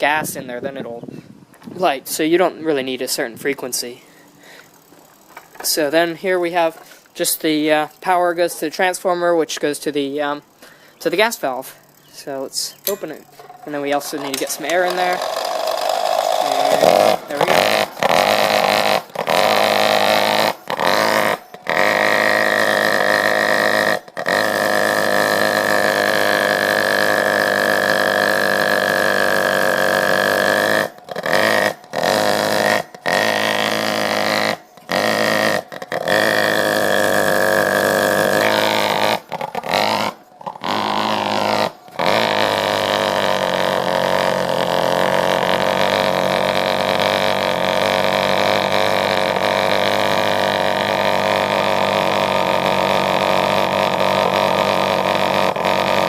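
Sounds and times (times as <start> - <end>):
furnace pulsing drone: 12.0 - 56.0.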